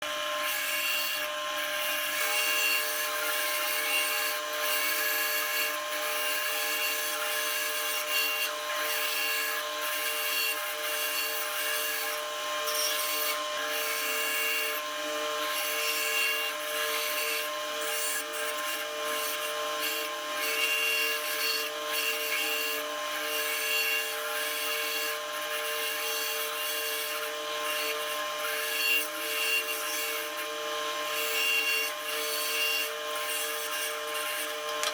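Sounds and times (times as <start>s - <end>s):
power saw cutting wood: 0.0s - 34.9s.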